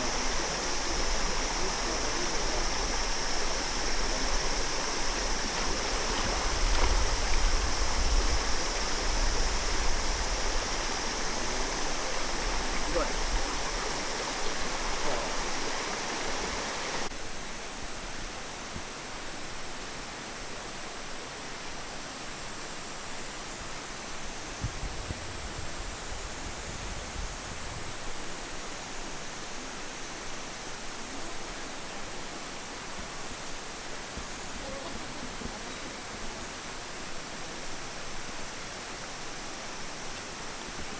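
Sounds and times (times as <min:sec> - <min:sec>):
water rushing and falling: 0:00.0 - 0:17.1.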